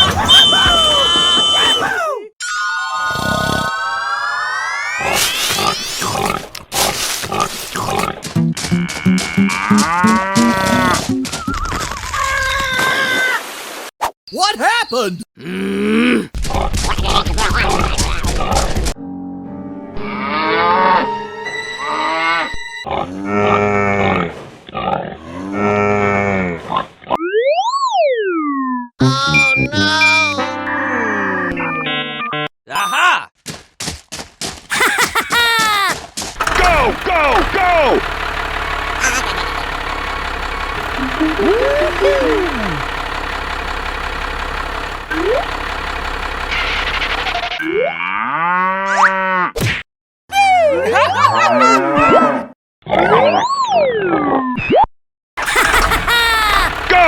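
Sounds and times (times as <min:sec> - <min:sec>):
whistle-like tones: 0:00.0 - 0:02.0
vehicle engine running: 0:36.4 - 0:47.6, 0:55.4 - 0:57.0.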